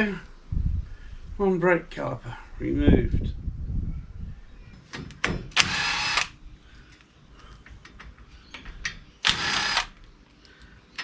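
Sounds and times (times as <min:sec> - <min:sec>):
impact wrench bursts: 0:05.6 - 0:06.4, 0:09.2 - 0:10.0.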